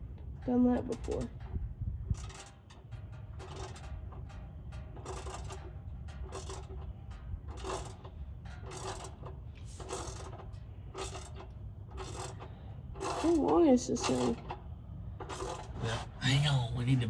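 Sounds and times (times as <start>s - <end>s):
steady low rumble: 0.0s - 17.0s
tools clicking and scraping: 5.0s - 6.9s, 7.5s - 14.6s, 15.2s - 16.1s.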